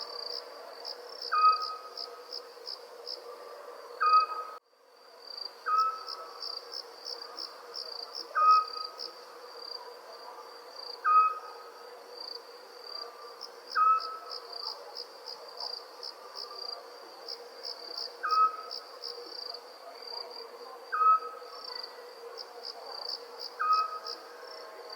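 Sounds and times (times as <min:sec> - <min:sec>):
crickets chirping: 0:00.0 - 0:24.9.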